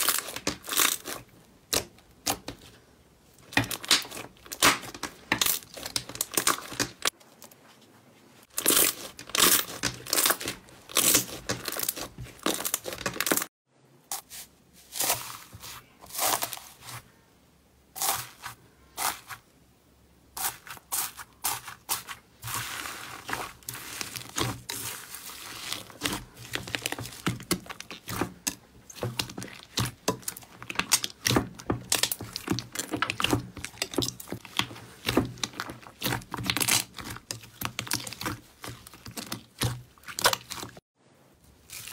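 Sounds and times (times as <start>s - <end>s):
slime crackling and popping: 0.0s - 2.7s, 3.4s - 7.2s, 8.5s - 13.5s, 22.4s - 40.8s.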